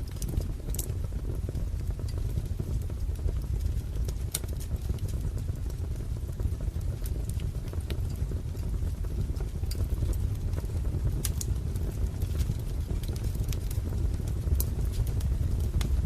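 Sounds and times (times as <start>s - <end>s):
sharp pops of fire: 0.0s - 16.0s
wood fire crackling: 0.0s - 16.0s.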